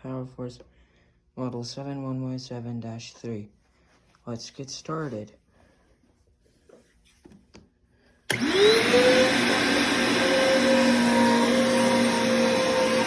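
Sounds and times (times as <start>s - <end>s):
vacuum cleaner motor whining: 8.3s - 13.0s.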